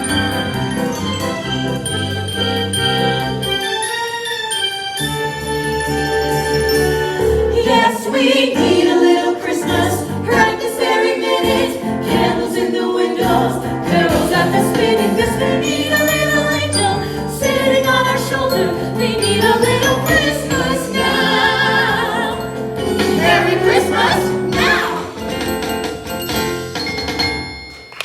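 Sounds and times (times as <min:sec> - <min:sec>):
upbeat christmas music: 0:00.0 - 0:28.0
upbeat christmas song: 0:00.0 - 0:28.0
choir-like vocals: 0:07.2 - 0:25.2.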